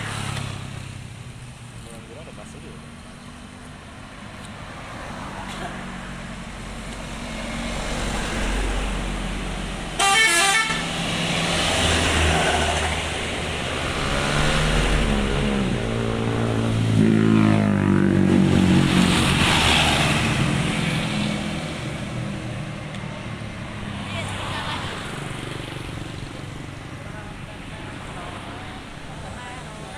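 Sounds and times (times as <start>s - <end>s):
engine and road noise: 0.0s - 29.9s
musical bus horn melody: 10.0s - 11.0s
warbling horn blast: 10.0s - 11.0s, 16.8s - 18.5s.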